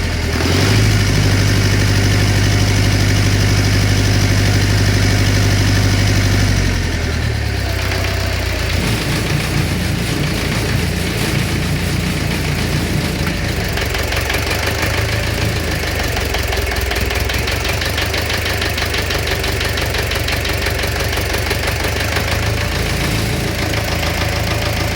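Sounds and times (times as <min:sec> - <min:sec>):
engine running with knocking: 0:00.0 - 0:24.9.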